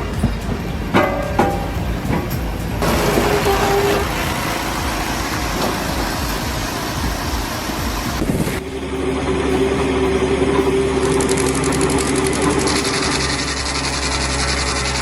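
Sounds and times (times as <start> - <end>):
heavy machinery engine running: 0.0 - 15.0
fast fine rattle: 10.7 - 15.0.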